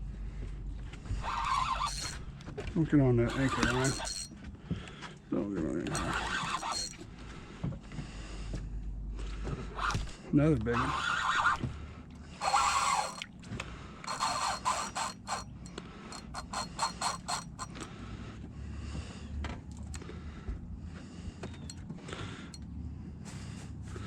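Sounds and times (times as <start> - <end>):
fishing reel drag buzzing: 1.2 - 2.3, 3.2 - 4.3, 5.9 - 7.0, 12.4 - 13.3, 14.1 - 17.8
rapid reel clicks: 1.4 - 2.2, 3.4 - 4.3, 5.9 - 7.0, 12.4 - 13.3, 14.1 - 17.8.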